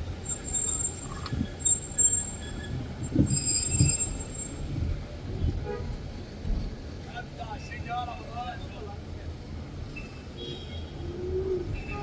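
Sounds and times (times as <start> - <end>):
street traffic rumble: 0.0 - 12.0
high-pitched metallic squeal: 0.3 - 4.6.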